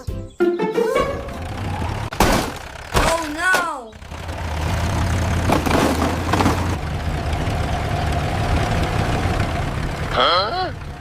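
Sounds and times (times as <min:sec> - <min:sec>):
engine idling: 0:01.2 - 0:11.0.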